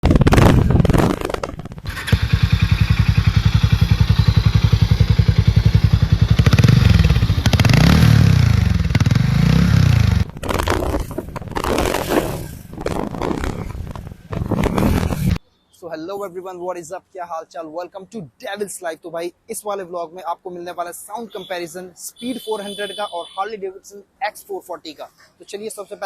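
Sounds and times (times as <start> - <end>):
uneven broken noise: 0.0 - 15.4
motorcycle engine idling and revving: 0.3 - 15.4.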